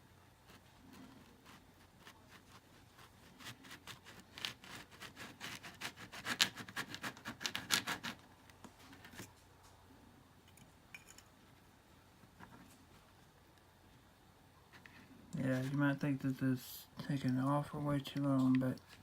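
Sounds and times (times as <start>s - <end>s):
plastic piece being ground by hand: 0.4s - 9.3s.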